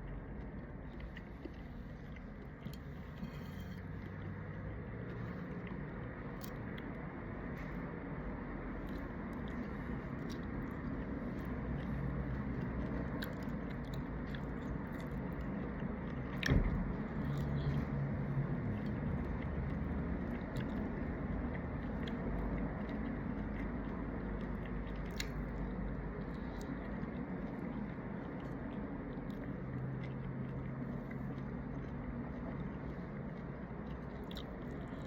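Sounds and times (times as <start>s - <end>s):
low background rumble: 0.0s - 35.0s
person chewing: 0.0s - 35.0s
small wet clicks: 18.8s - 33.3s.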